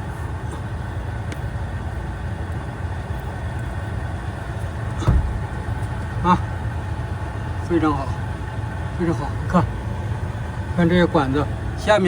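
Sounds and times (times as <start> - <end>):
short knock: 5.0 - 5.6.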